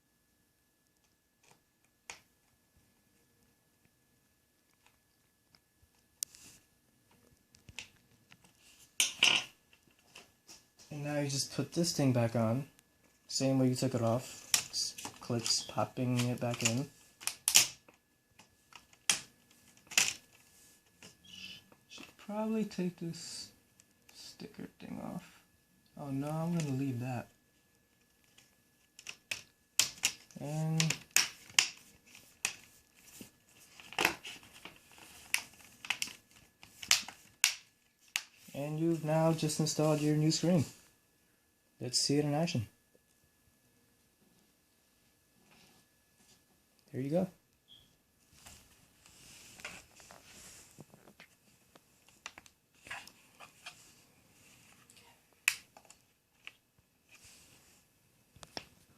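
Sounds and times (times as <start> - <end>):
rustling handling: 48.2 - 58.9.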